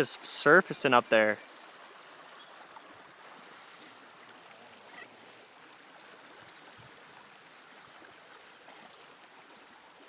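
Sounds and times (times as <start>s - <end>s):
stream water flowing: 0.0s - 10.0s
small tick: 5.7s - 6.7s.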